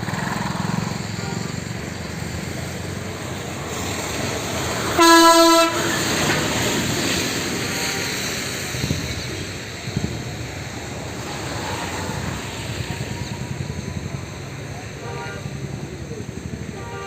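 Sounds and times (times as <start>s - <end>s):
horn blast: 4.8s - 6.1s, 14.8s - 15.8s, 16.5s - 17.0s.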